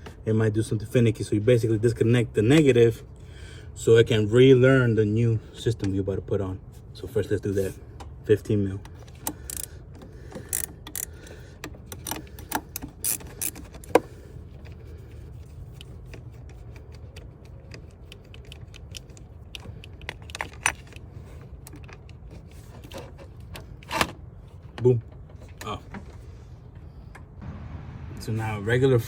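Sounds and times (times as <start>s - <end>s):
wrench clinking on battery terminal: 9.2s - 9.7s, 10.3s - 11.2s.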